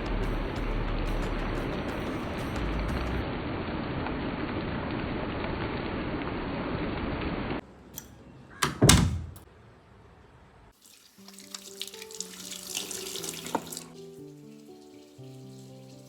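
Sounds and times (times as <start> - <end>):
soft background music: 10.8 - 16.0
tap running into sink: 11.3 - 14.0.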